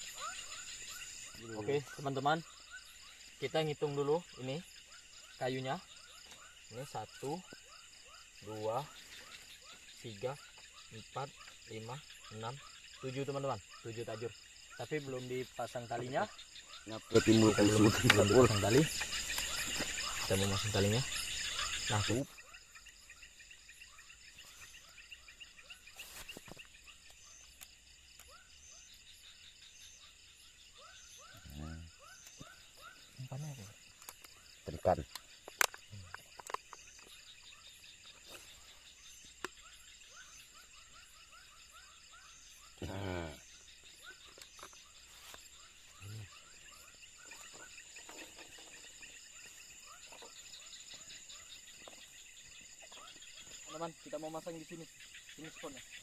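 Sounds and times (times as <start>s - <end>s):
crickets and insects trilling: 0.0s - 56.0s
frogs calling: 0.0s - 56.0s.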